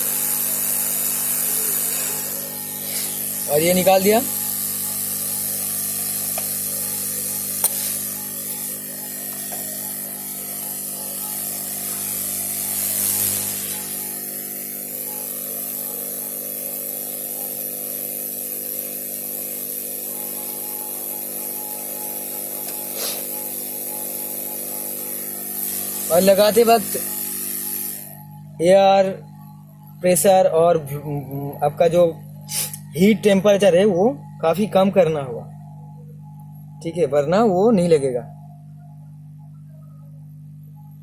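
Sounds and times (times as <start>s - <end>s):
hot air hiss: 0.0s - 28.2s, 32.4s - 32.9s.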